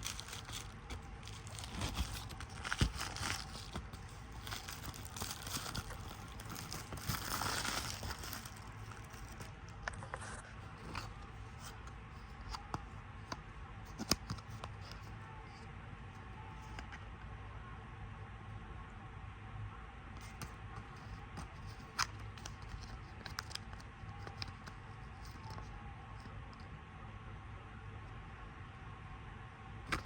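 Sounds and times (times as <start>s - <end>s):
packaging crinkling and tearing: 0.0s - 9.6s.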